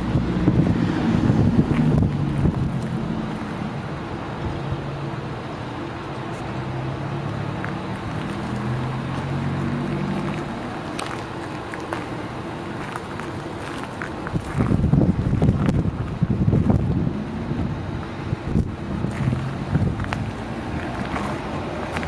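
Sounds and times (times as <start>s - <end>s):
wind on microphone: 0.0s - 3.7s, 14.2s - 22.0s
excavator diesel engine running: 0.0s - 22.0s.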